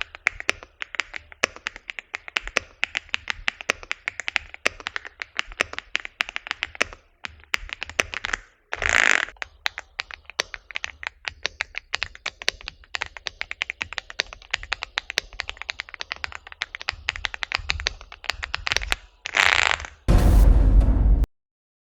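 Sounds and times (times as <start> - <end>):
fast typing on mechanical keyboard: 0.0 - 20.1
loud deep sound: 20.1 - 21.3.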